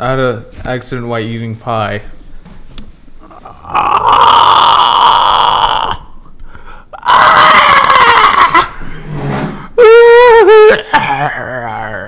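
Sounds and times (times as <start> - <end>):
person making rasping vocal noises: 3.2 - 6.2, 7.0 - 8.8, 9.8 - 12.0.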